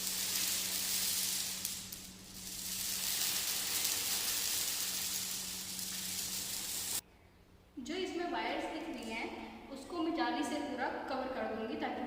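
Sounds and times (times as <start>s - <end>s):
marbles rolling in wire mesh: 0.0s - 7.0s.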